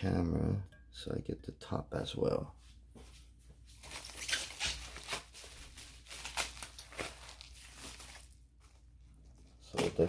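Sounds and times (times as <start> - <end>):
packing material rustling: 3.7 - 10.0.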